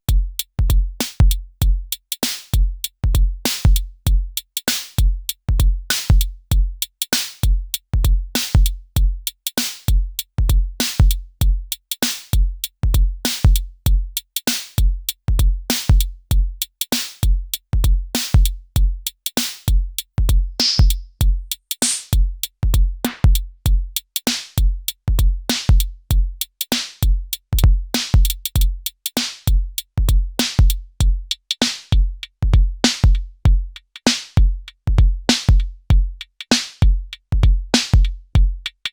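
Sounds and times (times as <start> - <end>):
electronic drum pattern: 20.6 - 21.0.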